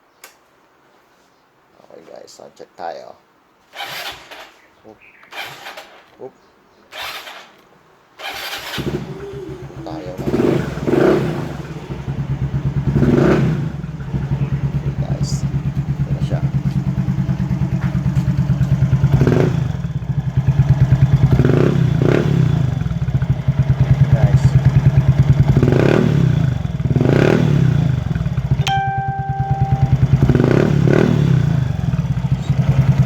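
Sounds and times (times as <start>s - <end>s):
scooter engine idling and revving: 3.8s - 4.5s, 5.3s - 6.0s, 6.9s - 7.5s, 8.2s - 33.0s
short steady beep: 28.6s - 30.7s.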